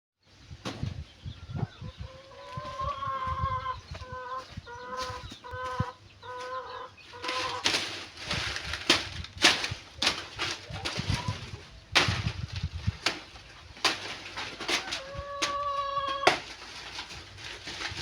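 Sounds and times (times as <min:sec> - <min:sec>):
chicken calling: 0:01.3 - 0:09.0, 0:09.6 - 0:11.9, 0:13.1 - 0:18.0
sharp crackling noises: 0:05.0 - 0:18.0.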